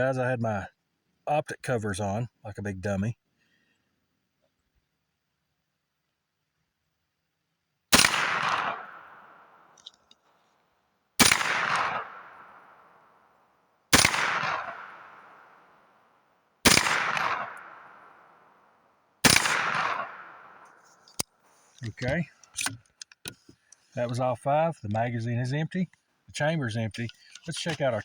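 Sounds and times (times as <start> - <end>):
gunshots with echo: 8.0 - 9.8, 11.2 - 13.2, 13.9 - 16.0, 16.6 - 20.8.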